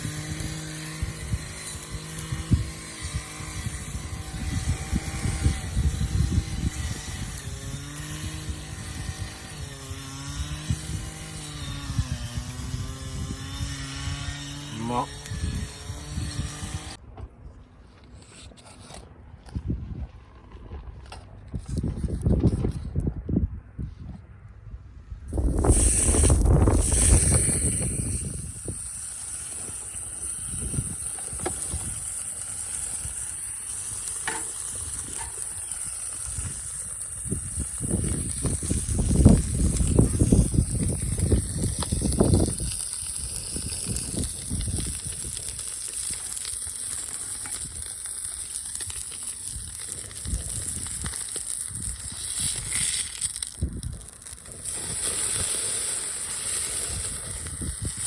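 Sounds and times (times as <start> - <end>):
wind rumbling on microphone: 0.0 - 17.6, 19.2 - 32.2, 34.5 - 46.4, 48.8 - 58.0
food sizzling on a grill: 25.4 - 58.0.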